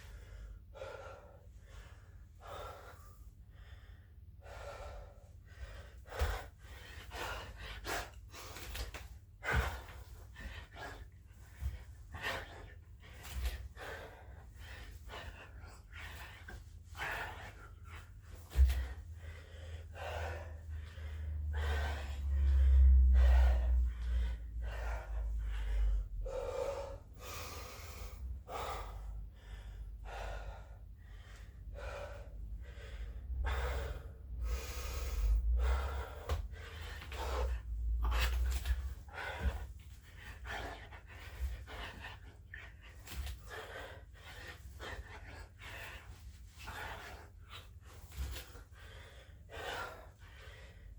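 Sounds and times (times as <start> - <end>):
man breathing hard: 0.0 - 50.9
deep rumble: 18.4 - 40.8.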